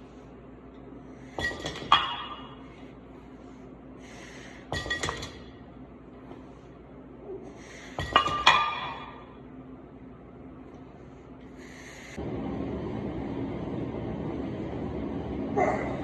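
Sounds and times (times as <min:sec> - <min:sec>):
metal weights clinking: 0:01.4 - 0:02.6, 0:04.7 - 0:05.6, 0:08.0 - 0:09.3.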